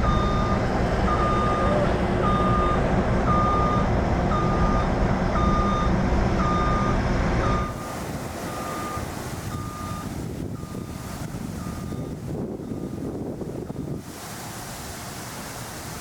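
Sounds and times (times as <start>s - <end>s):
backup alarm beeping: 0.0s - 14.0s
loud low engine rumble: 0.0s - 16.0s.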